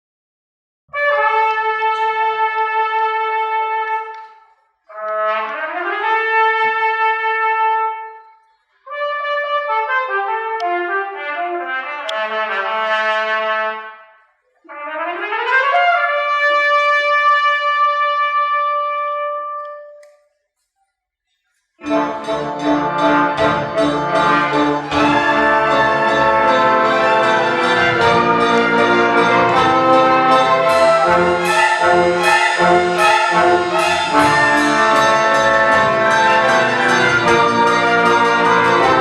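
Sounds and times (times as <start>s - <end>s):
solo brass melody: 0.9s - 4.2s, 4.9s - 8.2s, 8.9s - 14.0s, 14.7s - 20.0s, 21.8s - 39.0s
full orchestra playing: 21.8s - 39.0s.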